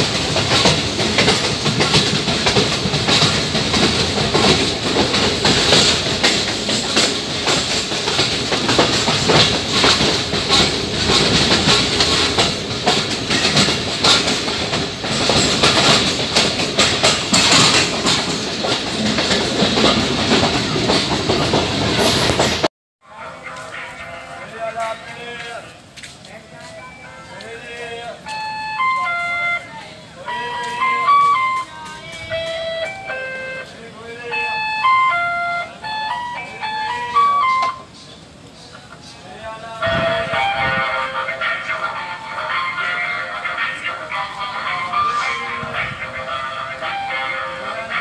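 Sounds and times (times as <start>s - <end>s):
train wheels clattering on rails: 0.0s - 22.7s.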